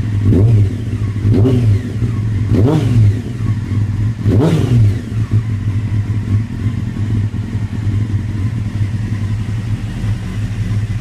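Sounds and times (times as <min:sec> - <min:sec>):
truck engine rough idle: 0:05.1 - 0:11.0.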